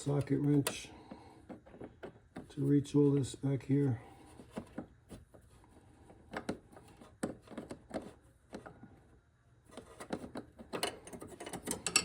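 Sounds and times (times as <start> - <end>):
hand tools clicking and knocking: 10.2 - 12.0.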